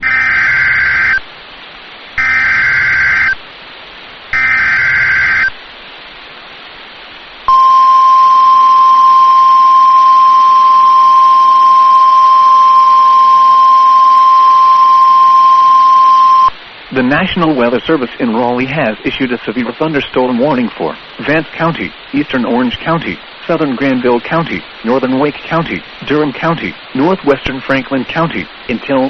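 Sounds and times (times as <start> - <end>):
steady single-pitch alarm tone: 0.0 - 1.2, 2.2 - 3.4, 4.3 - 5.6, 7.5 - 16.5
warbling digital data tones: 4.4 - 5.5.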